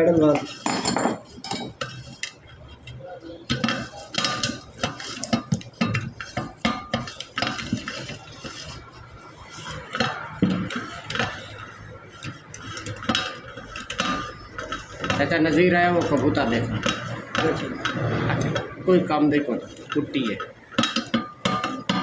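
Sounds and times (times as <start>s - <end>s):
metal tools clinking: 0.6s - 1.8s.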